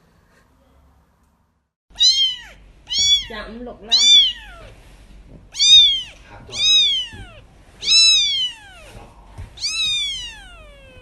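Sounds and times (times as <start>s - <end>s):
cat meowing: 1.9s - 4.8s, 5.5s - 11.0s.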